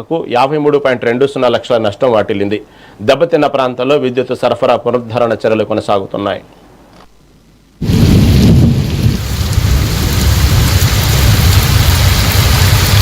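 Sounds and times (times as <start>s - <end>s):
deep rumble: 7.8s - 13.0s
pouring rain: 7.8s - 13.0s.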